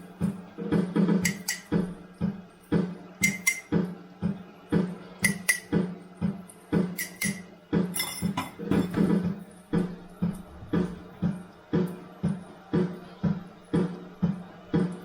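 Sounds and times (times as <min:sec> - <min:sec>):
low thud beat: 0:00.0 - 0:15.0
ringing clinks: 0:08.0 - 0:08.5.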